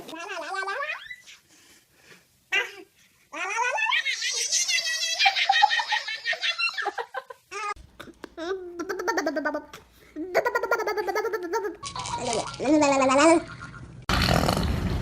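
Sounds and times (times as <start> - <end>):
baby laughing and squealing: 2.5 - 7.8.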